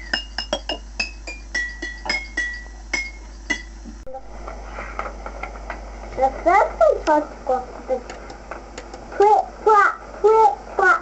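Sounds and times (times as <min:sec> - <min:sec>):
bottles and jars struck in a tune: 0:00.0 - 0:03.9.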